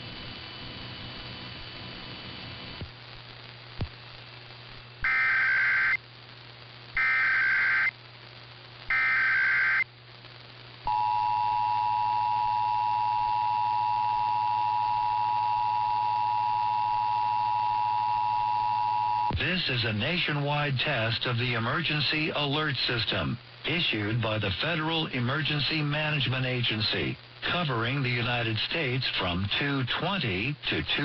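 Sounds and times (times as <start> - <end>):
warbling data tones: 5.0 - 6.0, 7.0 - 7.9, 8.9 - 9.8.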